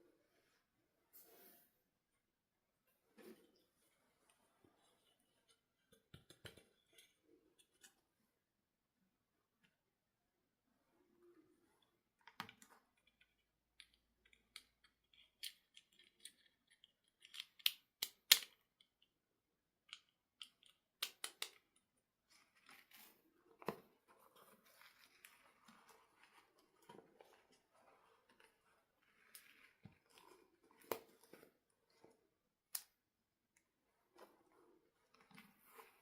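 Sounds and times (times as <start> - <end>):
toys clicking and snapping: 13.8 - 18.9
light rustling of packaging: 19.9 - 32.6.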